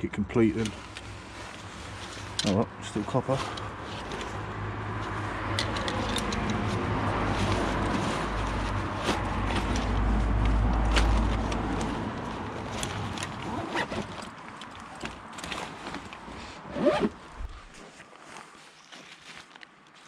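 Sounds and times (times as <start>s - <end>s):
passing vehicle engine rumble: 0.0s - 14.4s.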